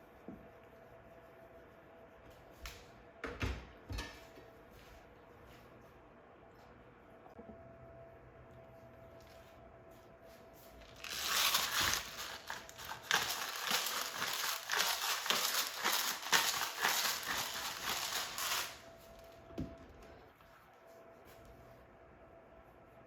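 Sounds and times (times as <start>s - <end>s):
crinkling and rustling: 10.6s - 19.4s.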